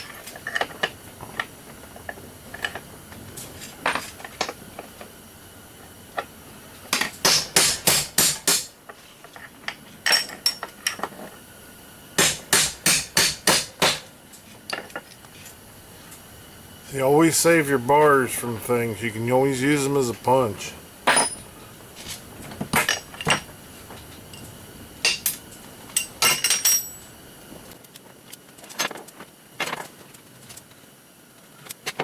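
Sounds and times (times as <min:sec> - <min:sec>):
hammer striking steel bar: 0:12.2 - 0:14.0.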